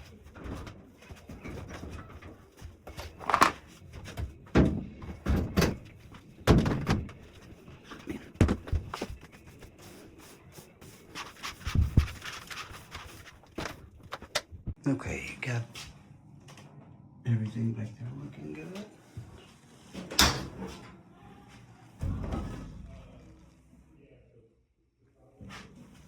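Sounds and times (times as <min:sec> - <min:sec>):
clothes dryer knocks and thumps: 0:04.1 - 0:07.4, 0:22.0 - 0:23.5.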